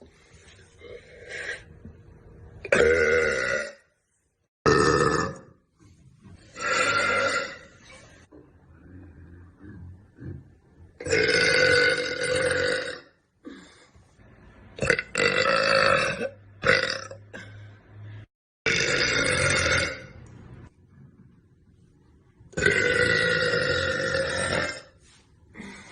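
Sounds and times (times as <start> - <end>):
woman burping loudly: 2.6 - 3.9, 4.7 - 5.5, 6.6 - 7.8, 11.0 - 13.2, 14.8 - 17.6, 18.7 - 20.2, 22.6 - 25.0.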